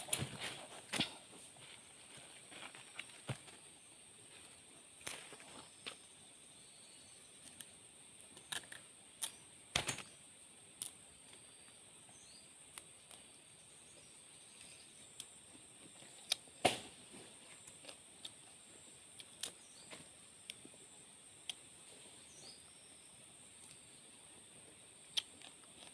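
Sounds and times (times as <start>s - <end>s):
sharp snaps and clicks: 25.1s - 25.9s.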